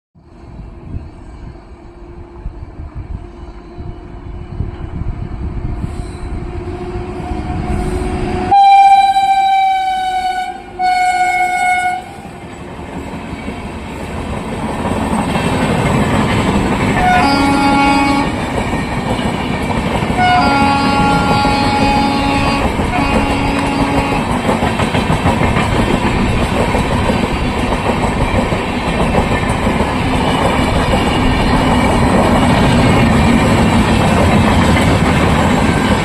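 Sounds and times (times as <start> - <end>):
train rolling noise: 0.2 - 36.0
locomotive rumble: 3.8 - 36.0
train horn blasts: 6.6 - 12.4, 17.0 - 18.4, 20.2 - 24.5.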